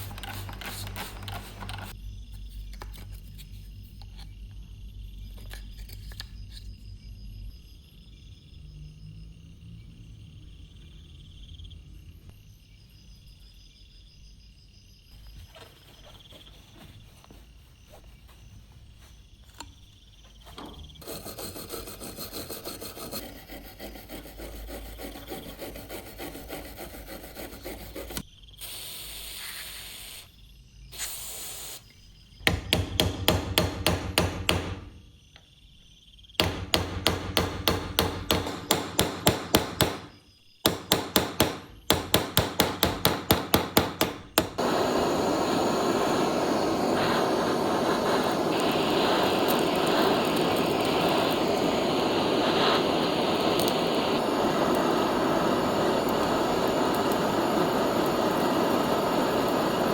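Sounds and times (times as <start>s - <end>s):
scraping and rubbing on metal: 21.0s - 28.2s
rapid hammer blows: 36.4s - 40.1s, 40.7s - 59.9s.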